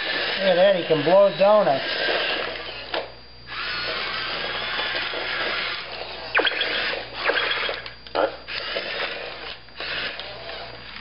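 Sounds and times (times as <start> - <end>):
toy motor and gears whirring: 0.0 - 11.0.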